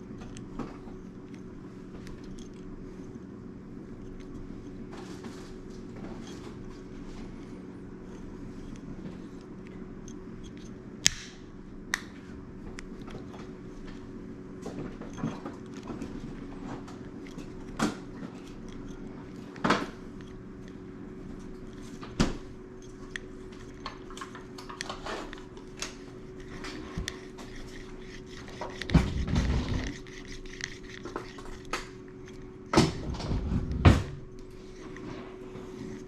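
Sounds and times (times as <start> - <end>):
steady hum: 0.0 - 36.0.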